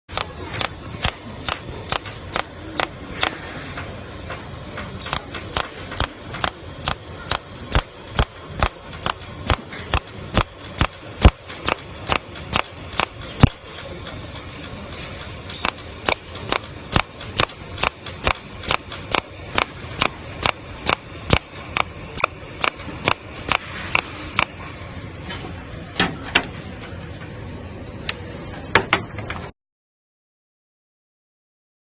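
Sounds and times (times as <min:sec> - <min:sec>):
welding machine clicking: 0:00.1 - 0:03.4, 0:05.0 - 0:24.6.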